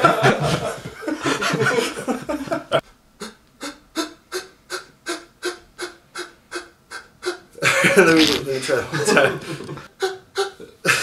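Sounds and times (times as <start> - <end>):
person panting heavily: 3.2 - 7.6.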